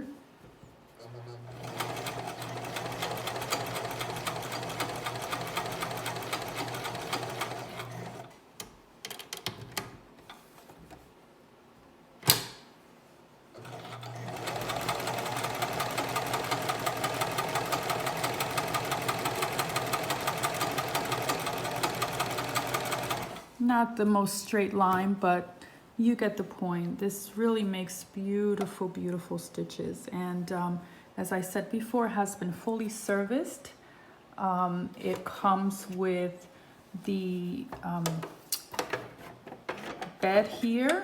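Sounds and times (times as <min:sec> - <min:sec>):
sewing machine clattering: 0:01.4 - 0:08.3, 0:13.6 - 0:23.4.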